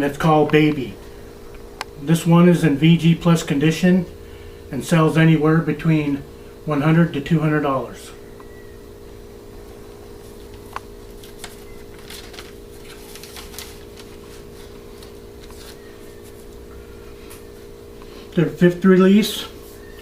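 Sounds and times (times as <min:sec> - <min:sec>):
steady low hum: 0:00.0 - 0:20.0
paper sleeve rustling: 0:10.2 - 0:16.7.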